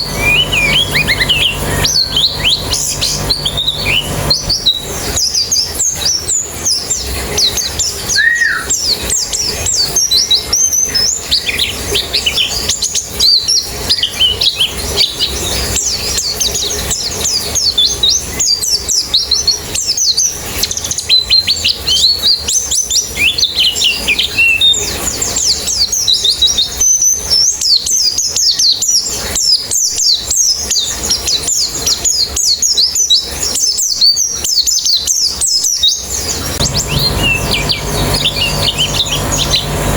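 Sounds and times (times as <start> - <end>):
flock of birds twittering: 0.0 - 18.4, 33.4 - 39.9.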